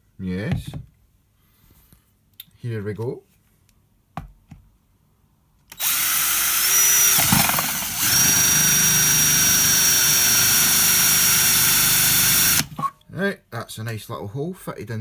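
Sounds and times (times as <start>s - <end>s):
electric hammer drill whining: 5.7s - 12.9s.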